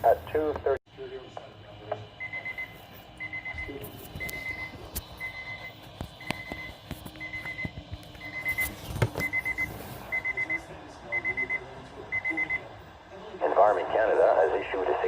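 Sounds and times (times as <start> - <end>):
weather radio alert beeps: 2.2 - 12.8.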